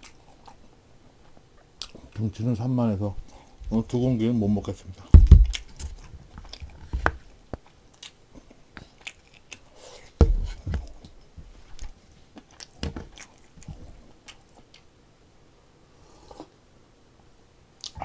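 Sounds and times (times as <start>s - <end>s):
low thumps: 3.6s - 4.2s, 5.2s - 6.1s
person chewing food: 7.6s - 10.6s.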